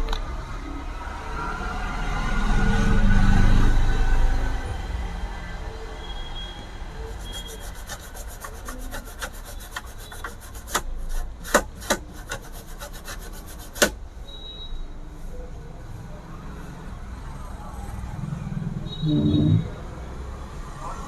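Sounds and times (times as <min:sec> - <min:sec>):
scrubbing on circuit board: 0:07.0 - 0:14.0.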